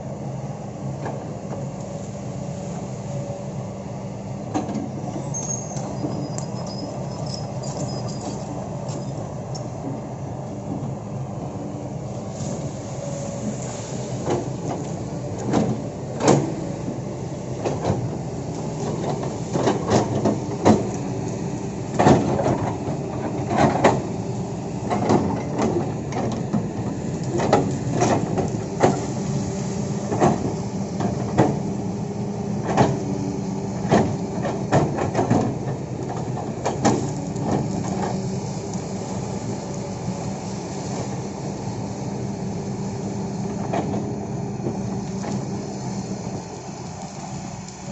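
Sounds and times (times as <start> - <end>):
excavator engine running: 0.0 - 47.9
machine knocks and clanks: 14.2 - 16.6, 17.6 - 21.0, 21.9 - 24.1, 24.8 - 29.1, 30.1 - 31.7, 32.6 - 33.0, 33.8 - 38.2.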